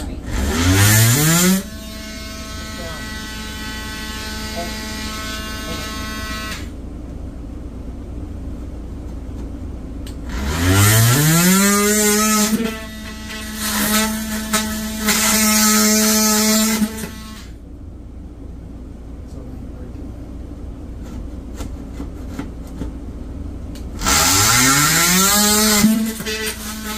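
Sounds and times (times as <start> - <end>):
electric power tool cutting: 0.0 - 6.7, 10.3 - 17.6, 24.0 - 26.9.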